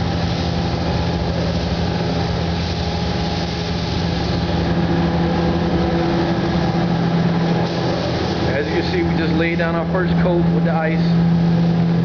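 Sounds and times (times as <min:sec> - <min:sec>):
hiss of spraying air: 0:00.0 - 0:09.3
machine hum: 0:00.0 - 0:12.0.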